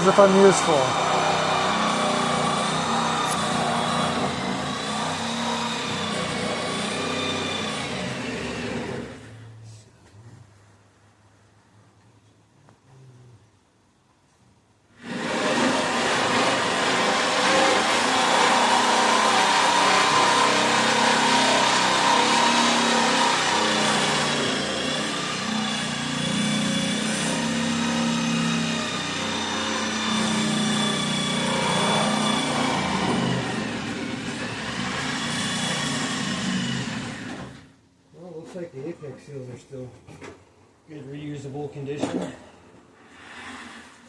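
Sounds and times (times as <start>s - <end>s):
machine motor running: 15.1s - 37.6s.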